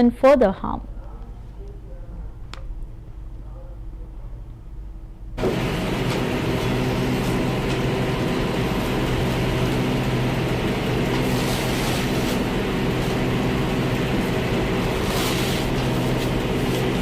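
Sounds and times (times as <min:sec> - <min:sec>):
mechanical drone: 0:05.4 - 0:17.0.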